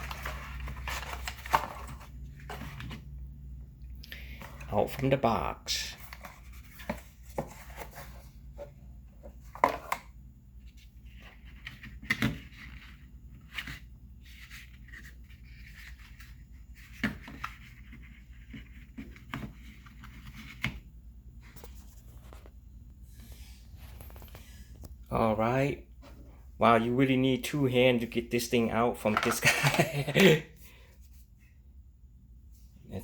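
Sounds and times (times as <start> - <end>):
packaging rustling: 0.0 - 2.9.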